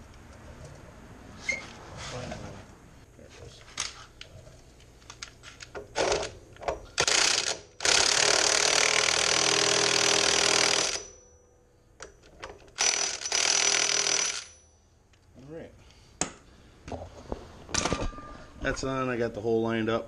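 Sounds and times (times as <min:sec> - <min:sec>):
impact wrench hammering: 0:05.9 - 0:11.4, 0:12.8 - 0:14.7.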